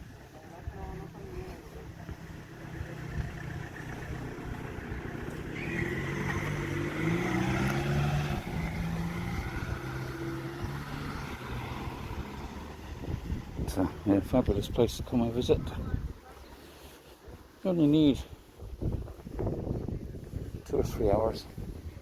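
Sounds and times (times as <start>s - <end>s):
vehicle engine passing by: 0.0s - 14.0s.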